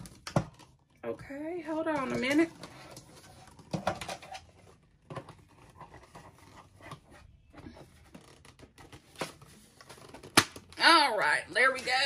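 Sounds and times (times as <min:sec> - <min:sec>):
plastic scraping and rubbing: 0:01.7 - 0:10.8.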